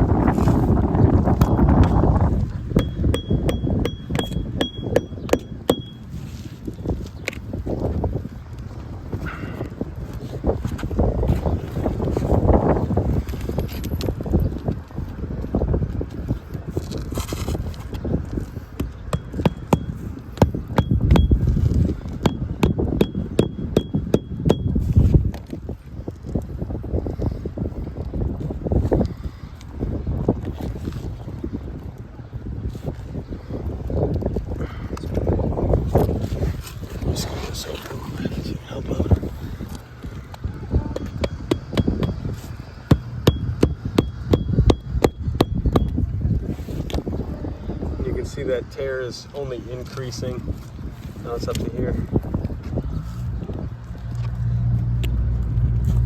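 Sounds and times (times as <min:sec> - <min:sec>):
low wind rumble: 0:00.0 - 0:56.0
hammer striking nails: 0:02.8 - 0:06.0, 0:19.1 - 0:21.4, 0:22.2 - 0:24.7, 0:41.0 - 0:42.2, 0:42.9 - 0:45.9.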